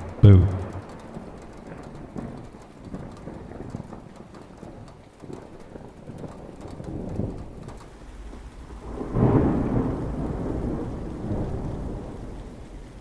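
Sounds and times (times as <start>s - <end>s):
rain hiss: 7.7s - 13.0s
thunder rumble: 8.2s - 13.0s.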